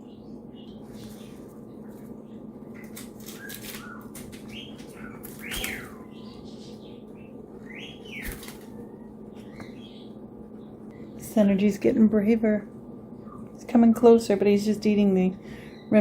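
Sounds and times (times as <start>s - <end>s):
pet birds chirping: 0.0s - 11.7s, 13.0s - 14.4s, 15.5s - 16.0s
wings fluttering: 0.7s - 9.8s
bird arched calls: 2.8s - 10.2s.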